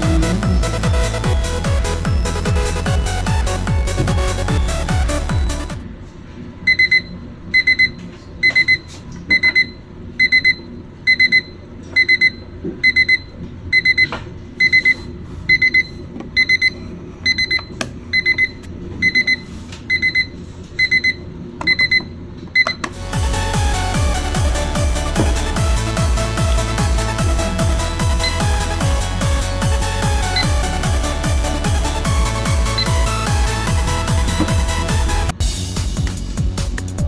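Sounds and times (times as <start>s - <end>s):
alarm clock beeping: 0.0s - 5.8s, 23.1s - 35.4s.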